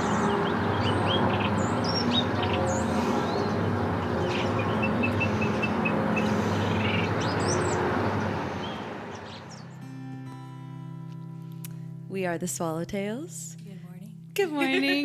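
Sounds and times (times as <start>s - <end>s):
birds chirping: 0.0s - 9.9s.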